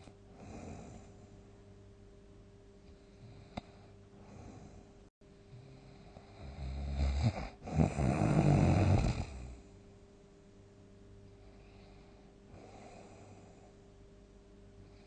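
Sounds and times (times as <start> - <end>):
person snoring loudly: 5.5 - 9.6.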